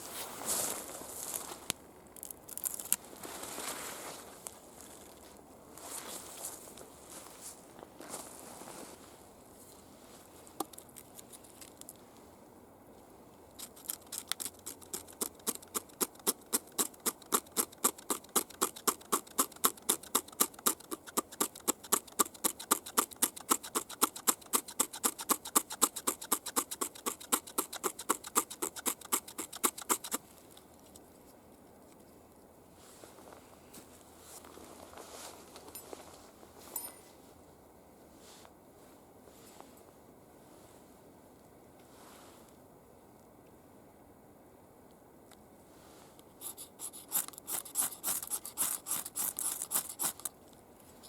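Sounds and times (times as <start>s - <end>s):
hand saw cutting wood: 14.1s - 30.2s, 46.4s - 50.3s.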